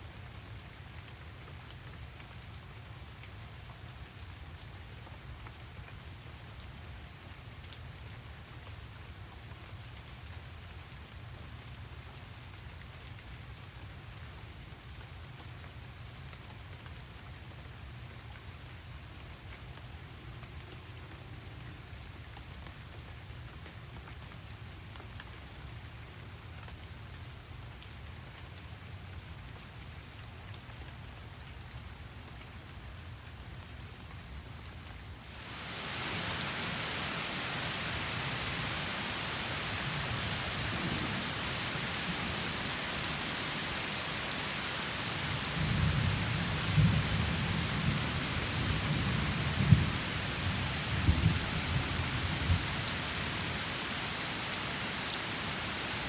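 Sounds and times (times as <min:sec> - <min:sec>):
heavy rain hissing: 0:35.2 - 0:56.0
thunder rumbling: 0:35.4 - 0:52.7.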